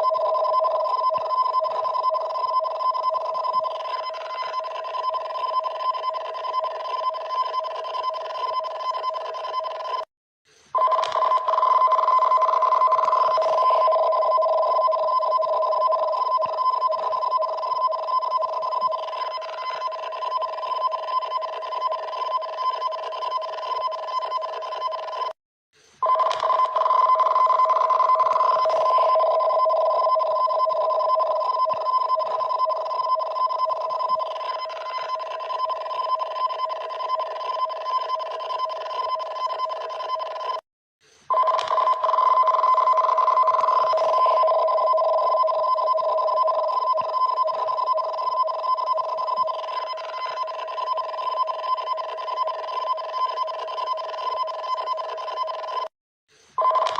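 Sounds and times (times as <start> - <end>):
two-tone electronic alarm: 0.0 - 10.1, 10.8 - 25.4, 26.0 - 40.6, 41.3 - 55.9, 56.6 - 56.9.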